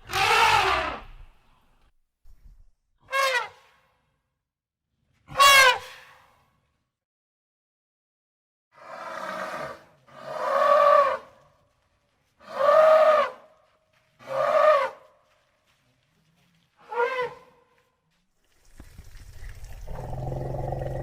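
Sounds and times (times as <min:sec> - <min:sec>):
elephant trumpeting: 0:00.0 - 0:01.1.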